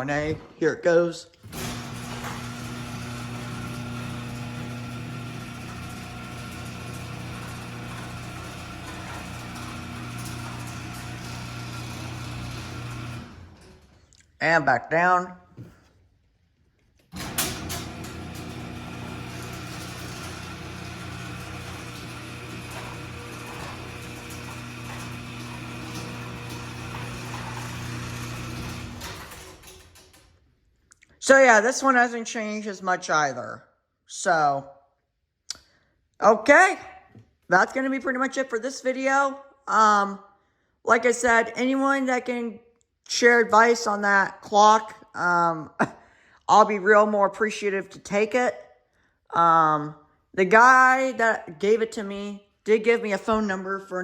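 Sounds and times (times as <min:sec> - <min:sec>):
garage door motor humming: 0:01.4 - 0:14.0, 0:17.1 - 0:30.5.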